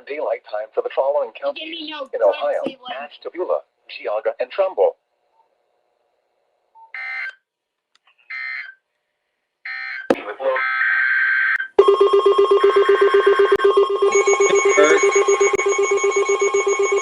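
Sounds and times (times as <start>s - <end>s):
two-tone data bursts: 14.0s - 17.0s.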